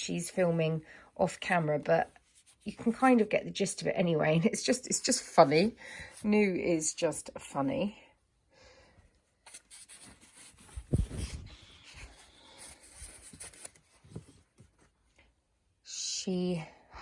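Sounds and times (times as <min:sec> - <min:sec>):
fabric rustling: 0:09.5 - 0:14.8.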